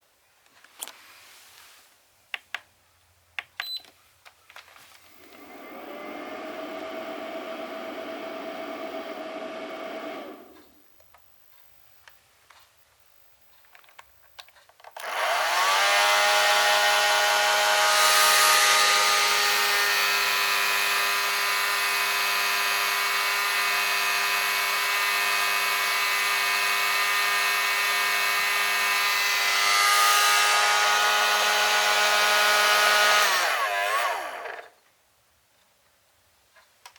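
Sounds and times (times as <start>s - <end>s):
hair dryer blowing air: 5.2s - 10.6s, 15.0s - 34.7s.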